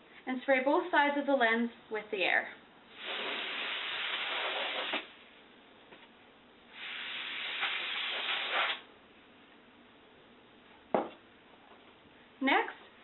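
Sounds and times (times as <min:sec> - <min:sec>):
compressed air spraying: 0:02.9 - 0:05.1, 0:06.7 - 0:08.9.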